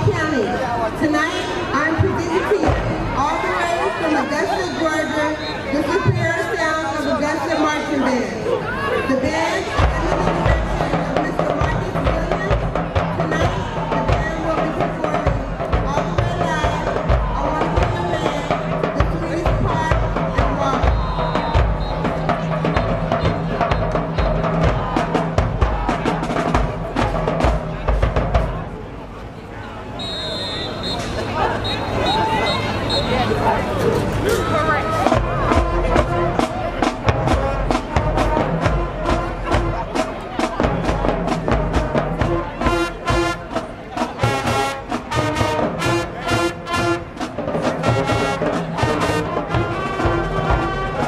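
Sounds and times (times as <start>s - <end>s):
brass chords: 9.7s - 28.6s, 30.0s - 51.0s
pounding bass drums: 9.7s - 28.8s, 34.6s - 51.0s.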